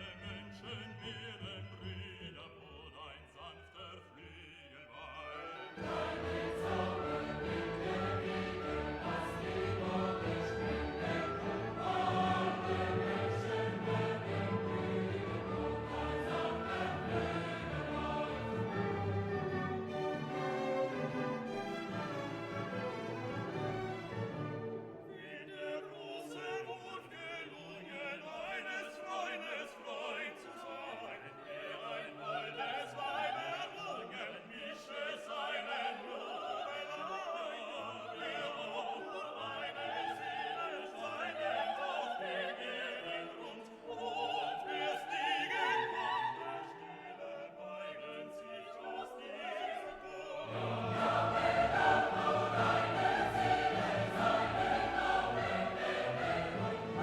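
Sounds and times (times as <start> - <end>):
operatic choir singing: 0.0 - 57.0
orchestral music: 5.0 - 32.8, 42.7 - 57.0.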